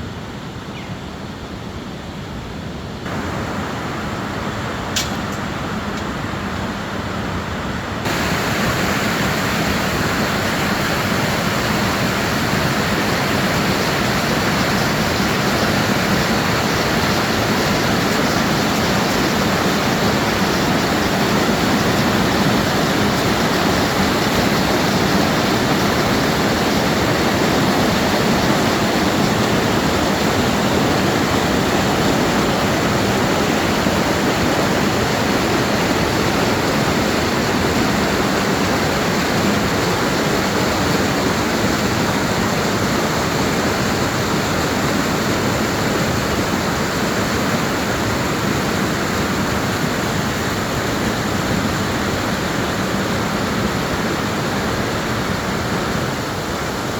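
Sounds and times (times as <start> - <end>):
river water rushing: 3.0 - 56.9.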